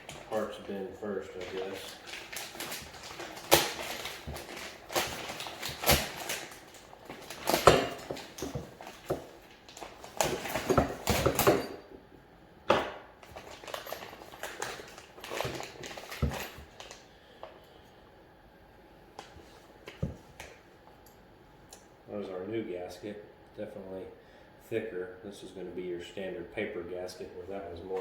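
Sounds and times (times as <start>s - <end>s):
plastic packaging rustling: 0.0s - 11.7s, 13.2s - 17.1s.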